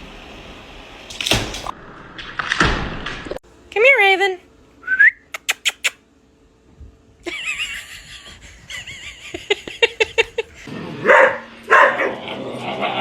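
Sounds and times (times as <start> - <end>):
dog barking: 11.0 - 12.2.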